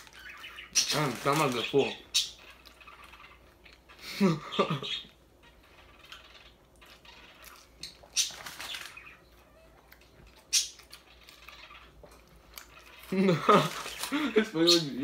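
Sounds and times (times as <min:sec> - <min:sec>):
chewing: 0:09.8 - 0:13.1.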